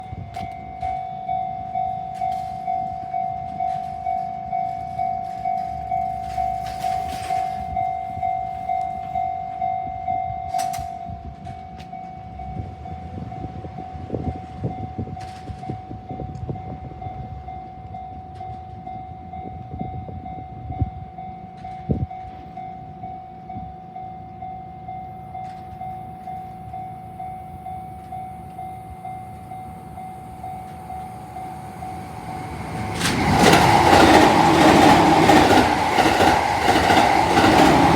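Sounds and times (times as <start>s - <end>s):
train rumbling past: 0.0s - 37.9s
wheel clacks over rail joints: 32.4s - 37.9s.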